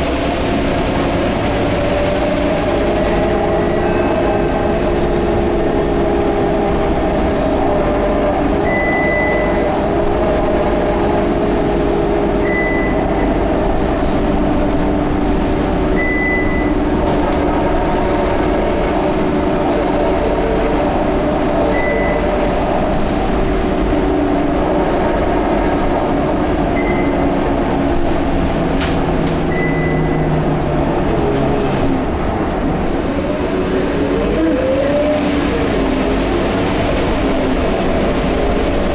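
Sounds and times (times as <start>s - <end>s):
bus drivetrain drone: 0.0s - 38.9s
short high beep: 16.0s - 16.7s, 29.5s - 30.3s.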